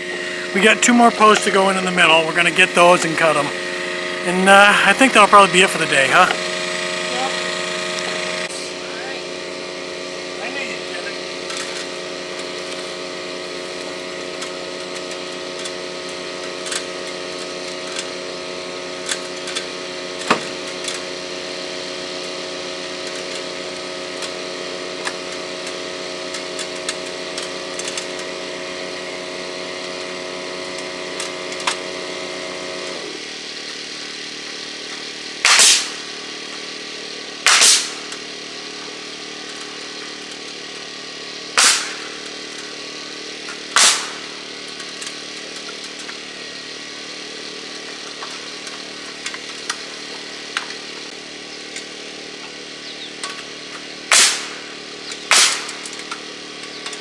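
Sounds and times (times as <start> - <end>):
loud sharp bursts: 0.0 - 8.5, 35.4 - 36.3, 37.4 - 38.3, 41.5 - 42.5, 43.7 - 44.6, 54.0 - 56.1
small gasoline engine running: 0.0 - 57.0.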